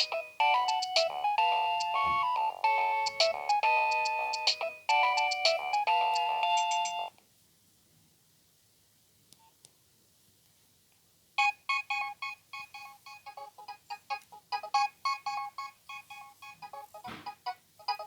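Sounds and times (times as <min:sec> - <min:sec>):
mobile phone ringtone: 0:00.0 - 0:07.1, 0:11.4 - 0:13.5, 0:14.5 - 0:16.9.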